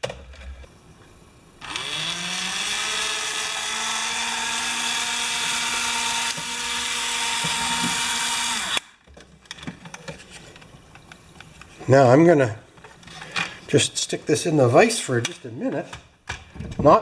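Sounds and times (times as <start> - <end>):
small electric motor humming: 1.6 - 8.9.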